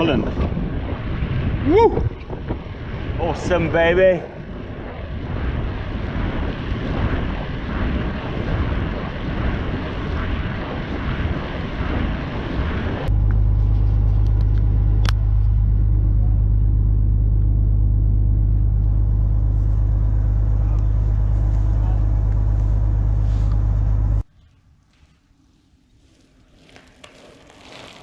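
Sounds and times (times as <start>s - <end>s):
wind rushing over microphone: 0.0s - 15.2s
steady low rumble: 0.0s - 24.3s
bike tyre noise on trail: 18.8s - 28.0s.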